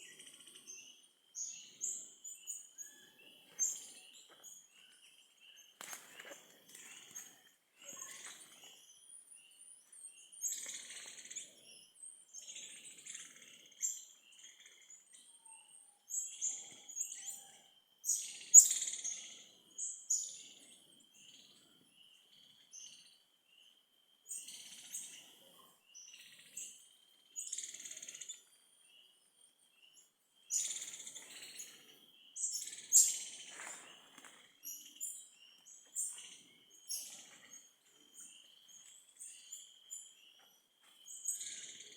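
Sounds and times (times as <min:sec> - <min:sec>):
birds chirping: 0:16.4 - 0:41.9.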